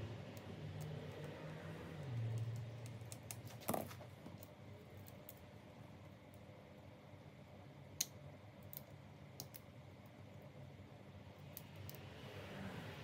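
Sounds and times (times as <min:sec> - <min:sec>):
small sharp clicks and taps: 0:08.0 - 0:09.7.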